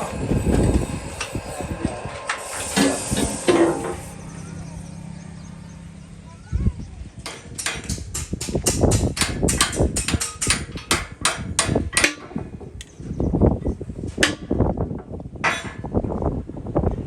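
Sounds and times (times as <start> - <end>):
hammer striking metal: 7.2 - 12.3.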